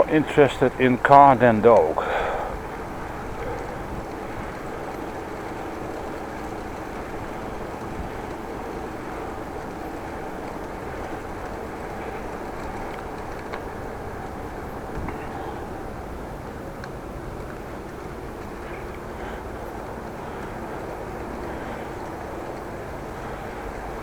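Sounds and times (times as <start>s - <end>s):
bicycle tyres on road: 0.1s - 24.0s.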